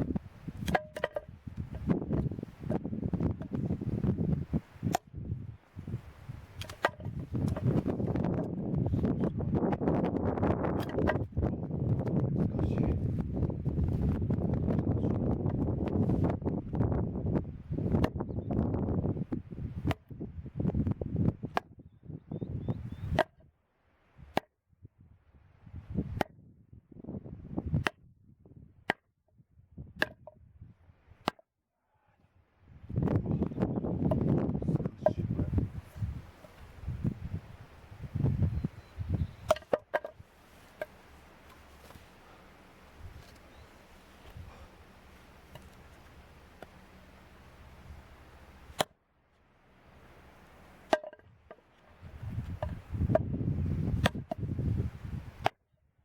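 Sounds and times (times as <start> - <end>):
blade chopping wood: 0.6 - 1.9, 6.6 - 7.9, 10.7 - 11.3, 17.9 - 18.2, 19.8 - 20.1, 21.5 - 21.7, 23.1 - 23.4, 24.3 - 24.5, 26.2 - 26.4, 30.0 - 30.3, 39.4 - 42.0, 48.7 - 49.0, 50.8 - 51.6, 52.5 - 54.5, 55.4 - 55.6
sharp knocks: 0.6 - 1.9.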